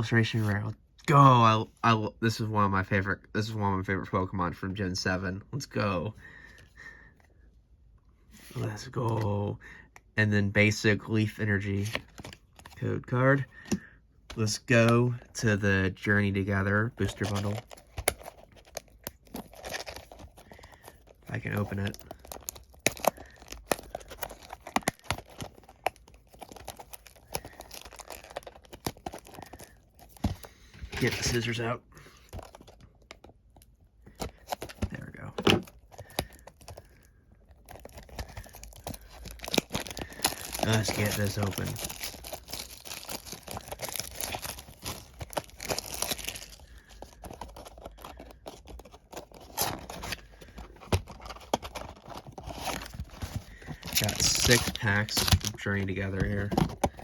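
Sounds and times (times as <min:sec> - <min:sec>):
plastic wrap crinkling: 0:16.7 - 0:57.0.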